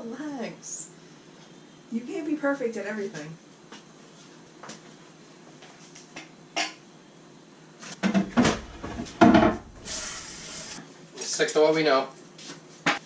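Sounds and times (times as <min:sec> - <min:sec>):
heavy bumps: 0:08.0 - 0:09.9.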